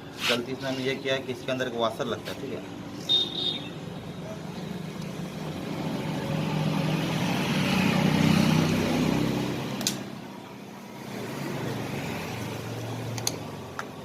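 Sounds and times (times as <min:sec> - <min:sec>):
sharp clicks: 0:09.8 - 0:10.0, 0:13.1 - 0:13.9.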